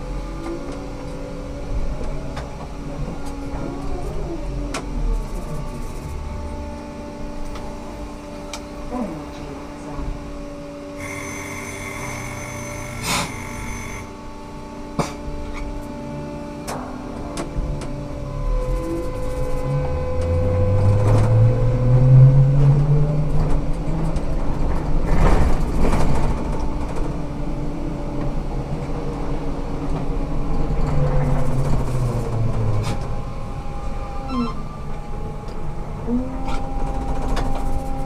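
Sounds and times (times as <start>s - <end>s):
auxiliary equipment humming: 5.0s - 19.7s
short gliding whines: 10.4s - 14.6s, 33.3s - 35.0s
electric drive humming: 11.0s - 14.2s.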